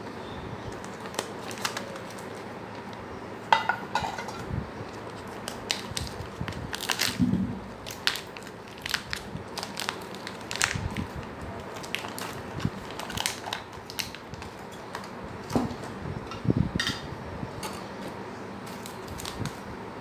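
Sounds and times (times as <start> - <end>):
packaging crinkling: 0.6 - 3.1, 4.4 - 15.8, 17.8 - 19.7.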